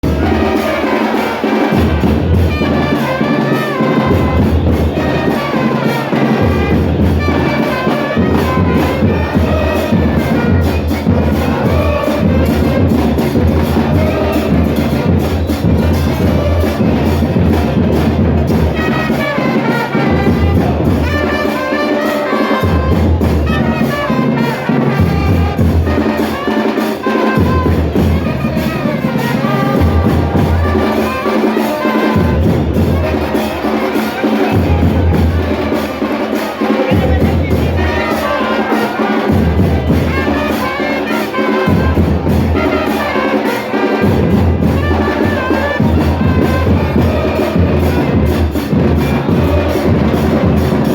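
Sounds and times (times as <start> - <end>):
music with trumpets and drums: 0.0 - 50.9.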